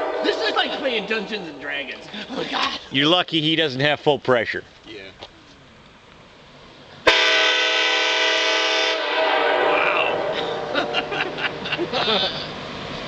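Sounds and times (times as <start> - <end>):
train air horn blasting: 0.0 - 0.6, 7.0 - 11.0
voices: 0.0 - 5.8.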